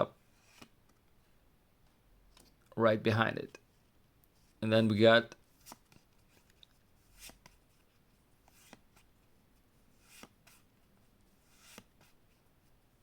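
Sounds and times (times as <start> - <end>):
cards sliding swishes: 0.3 - 0.8, 5.5 - 9.1, 9.9 - 12.4.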